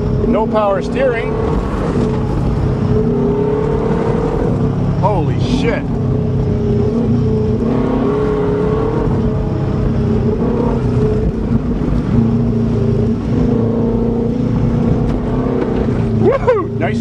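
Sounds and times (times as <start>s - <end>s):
car engine pulling steadily: 0.0s - 17.0s
road and tyre noise: 0.0s - 17.0s.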